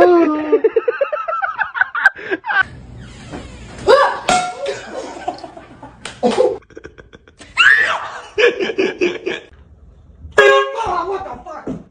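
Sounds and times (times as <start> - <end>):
quick evenly spaced laughs: 5.0 - 7.5
high rising and falling cry: 7.4 - 8.4
people laughing and shrieking: 7.4 - 8.6.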